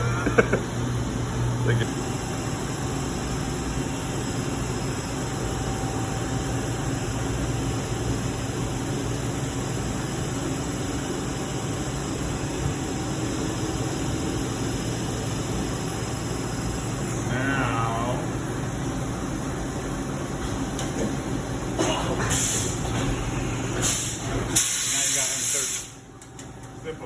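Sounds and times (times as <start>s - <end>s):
machinery hiss: 22.2s - 22.9s, 23.7s - 26.0s.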